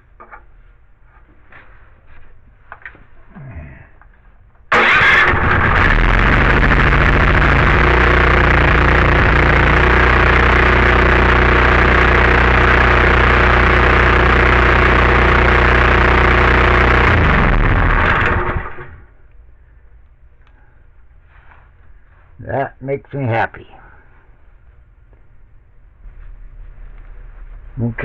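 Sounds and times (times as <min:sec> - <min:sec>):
small gasoline engine running: 0:04.7 - 0:19.1
engine winding down: 0:04.7 - 0:19.2.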